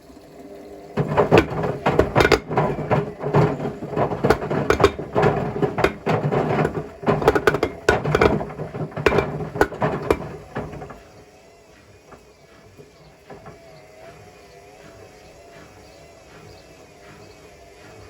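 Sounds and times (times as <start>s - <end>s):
brick clattering against drum: 1.0s - 11.2s
washing machine drum tumbling: 1.0s - 11.2s, 12.1s - 13.8s.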